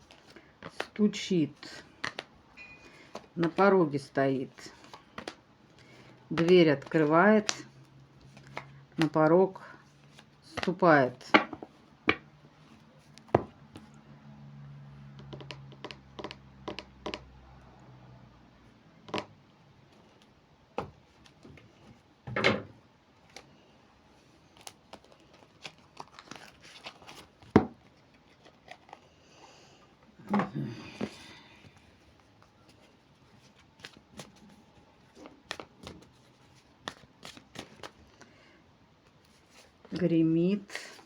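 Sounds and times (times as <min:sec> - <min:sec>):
cards being shuffled: 0:00.0 - 0:01.0, 0:01.9 - 0:02.3, 0:04.5 - 0:09.3, 0:10.0 - 0:13.9, 0:24.5 - 0:29.1, 0:31.0 - 0:38.3.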